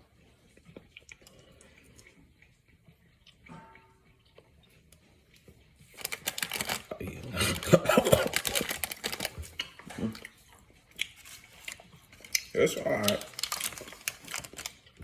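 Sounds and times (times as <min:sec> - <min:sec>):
wrapper clicks and rustles: 0:05.9 - 0:06.9, 0:08.0 - 0:09.8, 0:11.0 - 0:15.0.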